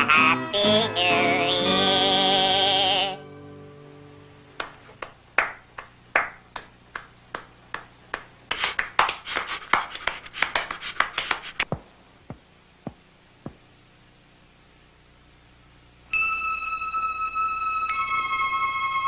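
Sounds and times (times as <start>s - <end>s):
hand clapping: 4.6s - 11.9s.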